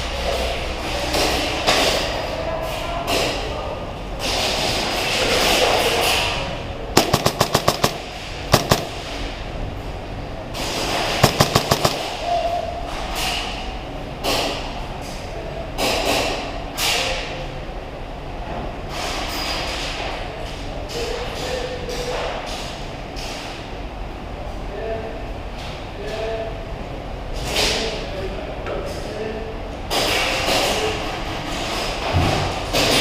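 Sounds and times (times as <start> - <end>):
airsoft gun shots: 7.0 - 9.1, 11.2 - 12.3.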